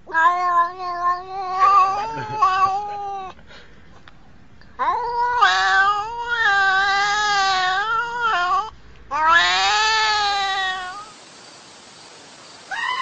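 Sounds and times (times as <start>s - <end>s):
cat yowling: 0.1s - 3.4s, 4.8s - 11.1s, 12.7s - 13.0s.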